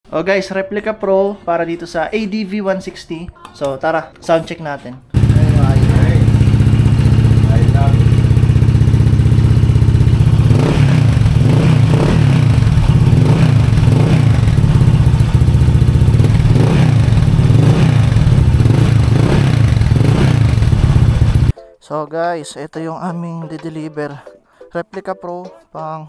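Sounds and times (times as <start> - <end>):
scooter engine idling and revving: 5.2 - 21.5.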